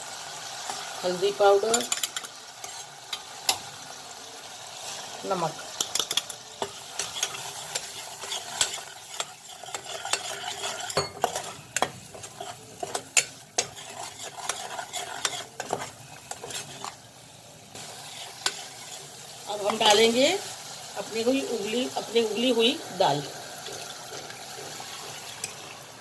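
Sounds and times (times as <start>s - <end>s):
oil sizzling in a pan: 0.0s - 26.0s
spatula scraping a pan: 1.6s - 3.7s, 4.8s - 20.2s, 23.2s - 26.0s.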